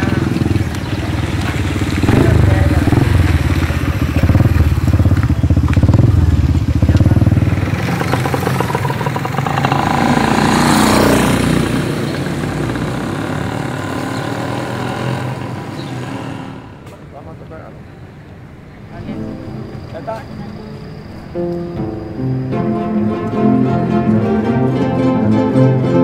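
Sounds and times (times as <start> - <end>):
motor engine running: 0.0 - 17.1
vehicle passing by: 0.0 - 18.2.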